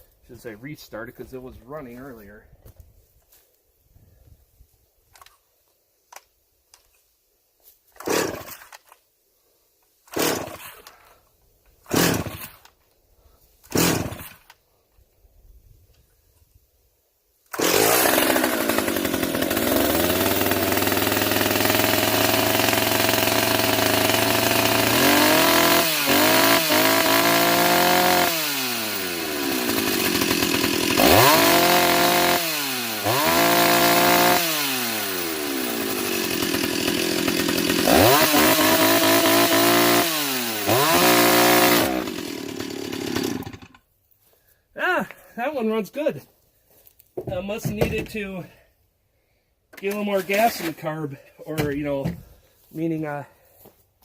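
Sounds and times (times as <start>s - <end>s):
chainsaw starter rope tugs: 7.9s - 9.0s, 10.0s - 12.8s, 13.6s - 14.6s, 17.5s - 43.9s, 49.8s - 52.0s
chainsaw engine running: 10.1s - 10.9s, 11.9s - 12.6s, 13.7s - 14.4s, 17.5s - 43.8s.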